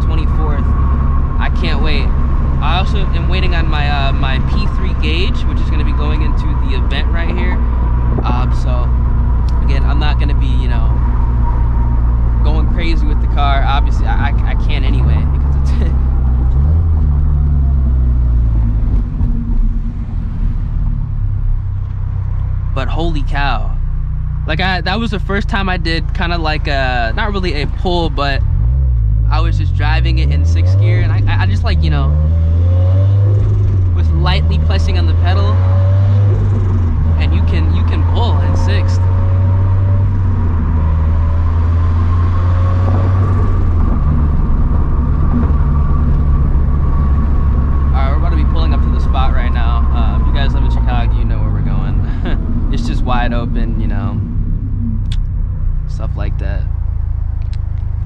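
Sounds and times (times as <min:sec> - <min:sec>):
car engine droning: 0:00.0 - 0:58.0
faint high whine: 0:01.3 - 0:11.1, 0:12.3 - 0:16.0, 0:44.6 - 0:52.1.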